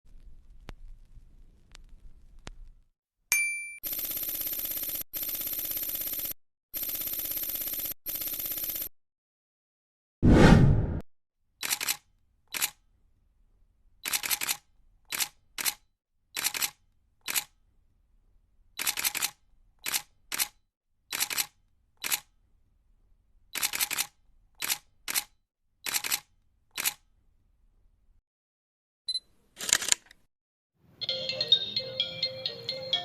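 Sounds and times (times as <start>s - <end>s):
camera shutter clicks: 11.6s - 12.8s, 14.0s - 15.8s, 16.4s - 17.5s, 18.8s - 22.3s, 23.6s - 25.3s, 25.9s - 27.0s, 29.6s - 30.2s.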